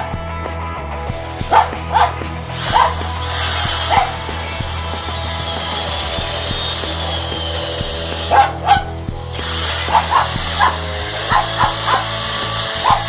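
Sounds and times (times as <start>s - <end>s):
dog barking: 1.5s - 3.0s, 3.8s - 4.2s, 8.2s - 8.9s, 9.9s - 13.0s
power drill whine: 2.6s - 8.7s, 9.3s - 13.0s.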